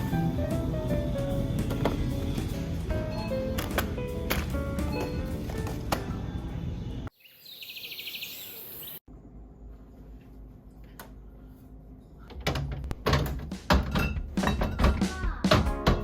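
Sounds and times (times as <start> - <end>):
background music: 0.0 - 7.1.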